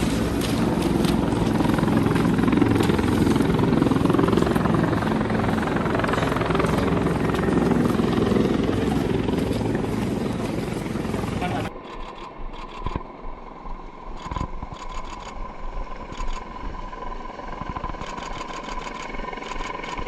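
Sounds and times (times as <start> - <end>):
heavy engine droning: 0.0 - 11.7.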